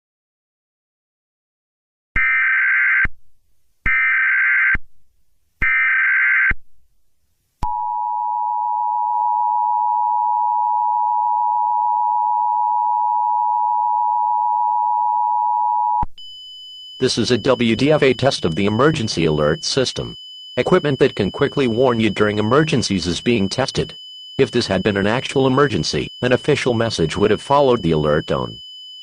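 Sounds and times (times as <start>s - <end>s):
data bursts: 16.2s - 28.6s
two-tone attention signal: 17.0s - 28.6s.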